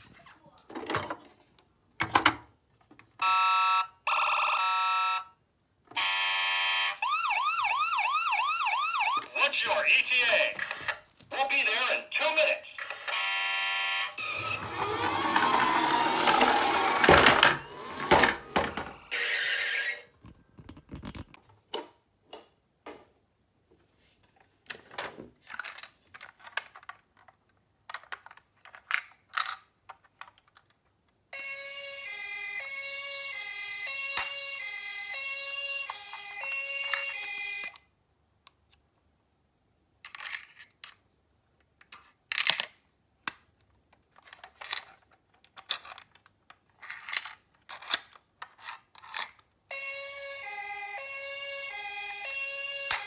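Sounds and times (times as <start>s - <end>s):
toy electronic two-tone siren: 3.2s - 5.3s, 6.0s - 9.4s, 12.9s - 19.9s, 31.4s - 37.8s, 49.7s - 53.0s
toy cars clattering and rolling: 14.2s - 19.0s, 24.8s - 30.9s, 40.0s - 41.1s, 41.8s - 42.8s, 44.0s - 49.5s.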